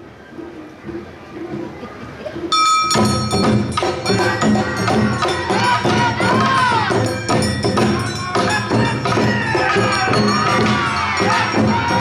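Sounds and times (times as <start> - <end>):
drums beating: 0.8 - 12.0
ringing gong: 2.5 - 12.0.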